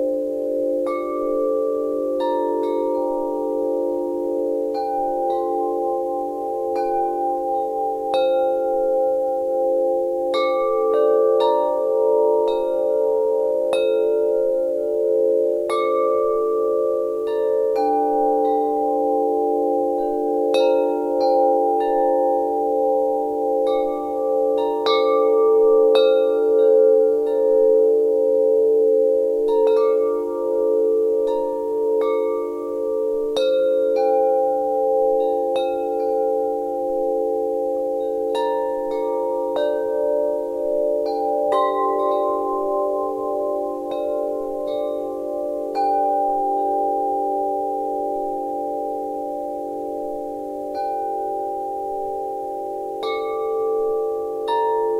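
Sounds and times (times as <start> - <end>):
wind chimes ringing: 0.0 - 54.9.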